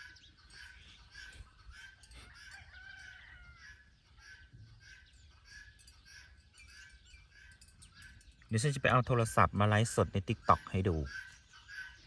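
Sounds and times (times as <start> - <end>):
small birds chirping: 0.0 - 12.0
faint rooster crowing: 1.7 - 4.4.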